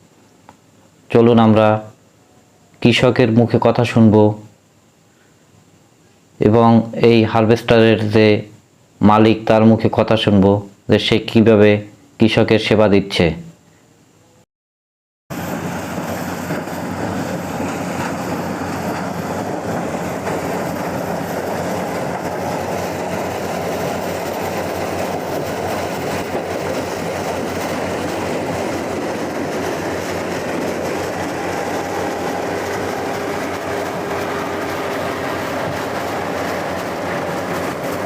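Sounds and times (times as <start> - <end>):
combine harvester running: 15.3 - 38.0.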